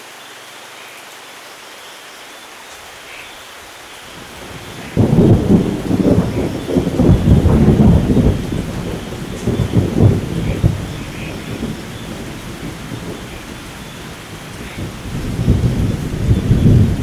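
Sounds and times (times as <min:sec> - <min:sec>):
steady rainfall: 0:00.0 - 0:17.0
thunder rumbling: 0:04.1 - 0:17.0.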